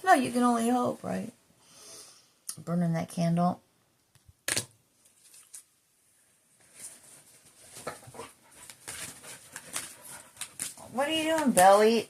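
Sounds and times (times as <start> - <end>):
dog scratching and clicking: 7.6 - 11.9.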